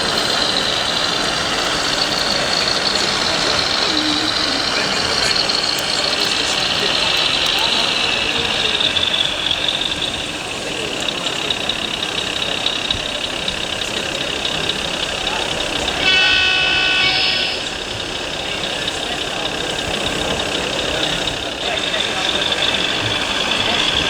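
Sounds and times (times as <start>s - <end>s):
hubbub of voices: 0.0s - 24.0s
model truck horn: 15.0s - 24.0s.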